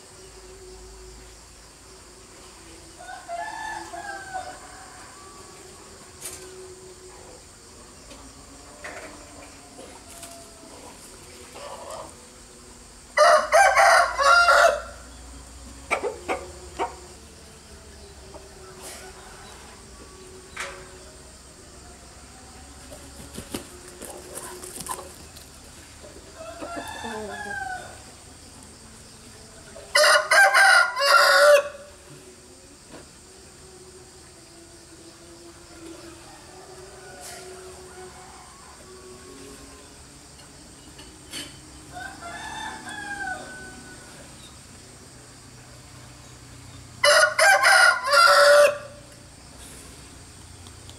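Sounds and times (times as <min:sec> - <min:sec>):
rooster crowing: 0:03.0 - 0:06.0, 0:13.2 - 0:15.2, 0:18.0 - 0:20.3, 0:26.2 - 0:28.2, 0:29.9 - 0:31.9, 0:36.0 - 0:39.4, 0:41.8 - 0:44.3, 0:47.0 - 0:49.1.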